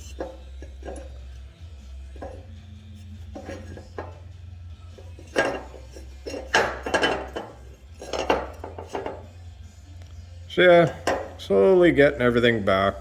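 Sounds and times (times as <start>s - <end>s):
metal pieces clinking and scraping: 0.0s - 1.4s, 2.2s - 4.2s, 5.0s - 9.3s.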